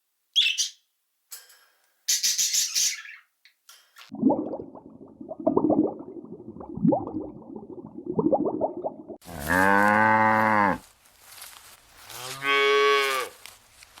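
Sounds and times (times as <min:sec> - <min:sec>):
cow mooing: 0:09.2 - 0:10.8, 0:12.2 - 0:13.4.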